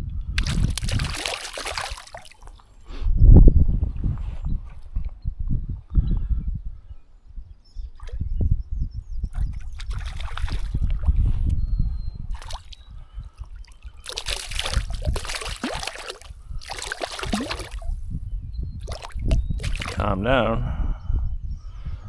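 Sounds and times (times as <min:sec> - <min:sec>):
wind rumble on microphone: 0:00.0 - 0:22.0
water splashing and sloshing: 0:00.4 - 0:02.8, 0:09.4 - 0:11.5, 0:12.3 - 0:18.1, 0:18.8 - 0:20.1.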